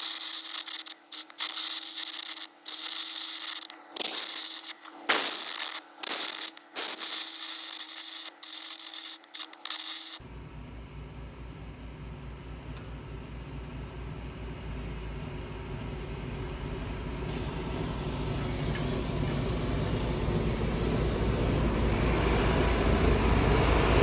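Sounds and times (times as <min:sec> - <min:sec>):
harsh hiss of arc gouging: 0:00.0 - 0:10.2.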